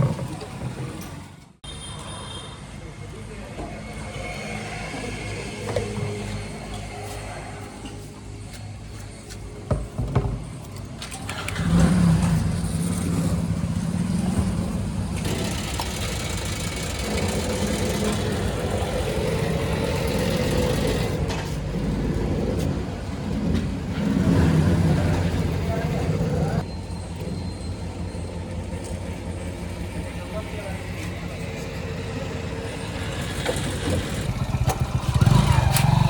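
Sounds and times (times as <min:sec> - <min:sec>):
diesel engine revving: 0:11.3 - 0:26.7, 0:31.2 - 0:36.0.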